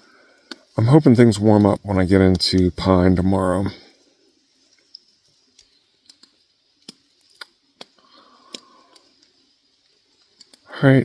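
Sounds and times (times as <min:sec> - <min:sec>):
faint clicks and ticks: 0:00.0 - 0:11.0.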